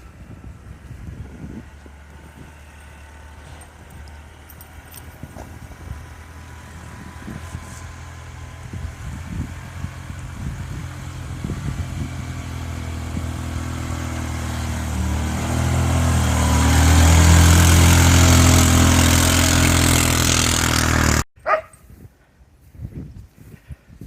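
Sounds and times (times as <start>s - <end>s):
large vehicle engine approaching: 0.0s - 21.2s
dog bark: 21.4s - 21.8s.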